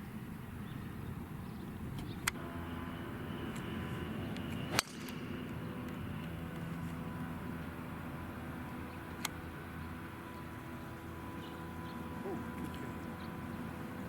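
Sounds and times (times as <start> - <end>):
steady low hum: 0.0 - 14.0
golf club swing whoosh: 4.5 - 5.3
golf club striking ball: 4.7 - 5.3.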